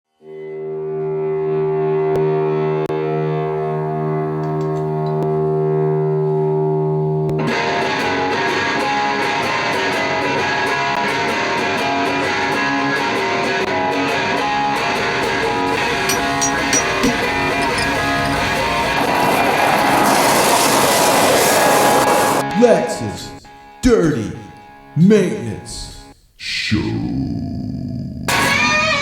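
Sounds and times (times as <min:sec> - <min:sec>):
electric guitar chord: 0:00.2 - 0:16.1.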